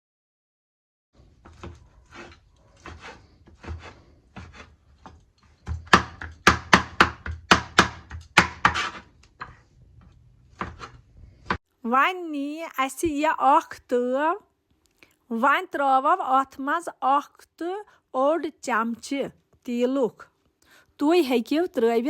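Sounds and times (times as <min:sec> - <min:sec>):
knife chopping on wooden board: 0:01.4 - 0:09.6, 0:10.5 - 0:11.6.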